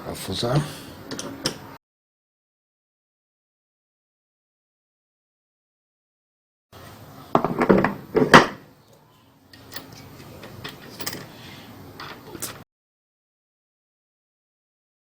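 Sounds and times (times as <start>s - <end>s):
washing machine parts clattering: 7.3s - 8.7s, 9.5s - 12.6s.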